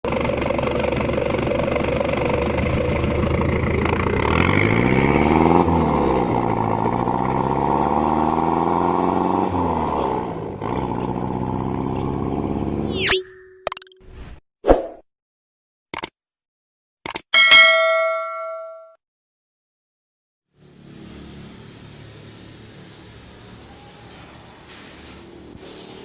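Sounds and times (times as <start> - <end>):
diesel engine idling and revving: 0.0 - 12.9.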